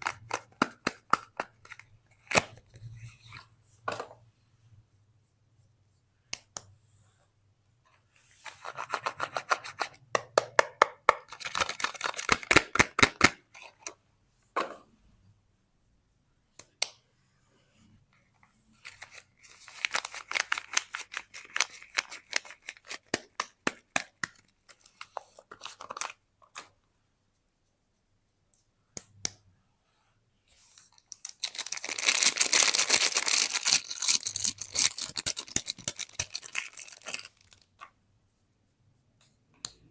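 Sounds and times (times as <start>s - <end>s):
wrappers crinkling and tearing: 31.2s - 37.7s.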